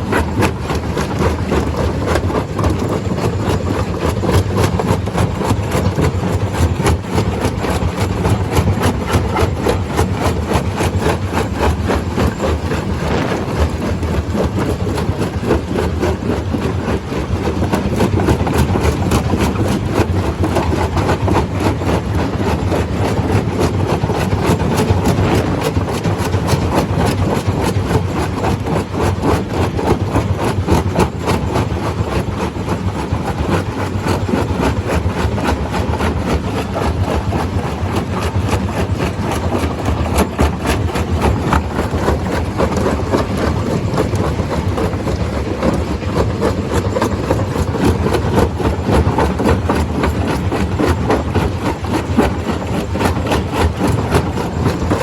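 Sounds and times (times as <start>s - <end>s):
stone crusher machine drone: 0.0s - 22.2s
continuous clatter: 0.0s - 55.0s.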